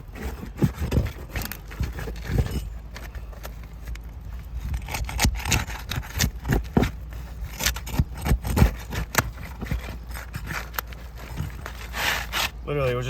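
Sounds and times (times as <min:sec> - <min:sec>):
roof shingles tearing: 0:04.6 - 0:12.6.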